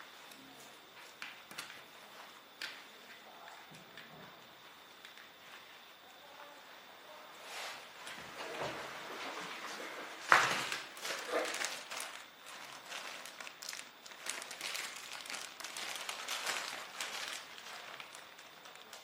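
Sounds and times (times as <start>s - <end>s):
rustling and clattering handling: 7.7s - 19.0s.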